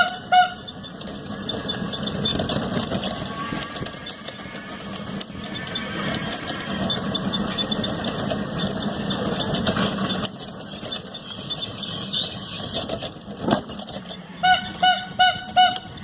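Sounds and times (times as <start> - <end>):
vehicle engine running: 0.0 - 11.9, 12.6 - 16.0
road traffic noise: 0.0 - 16.0
high wavering squeal: 3.0 - 8.8, 9.9 - 13.2.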